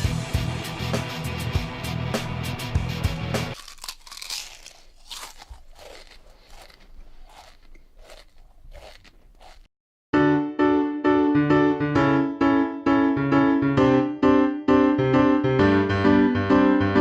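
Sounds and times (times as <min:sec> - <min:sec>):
rock music with guitar: 0:00.0 - 0:03.6
crunching chewing sounds: 0:03.5 - 0:09.7.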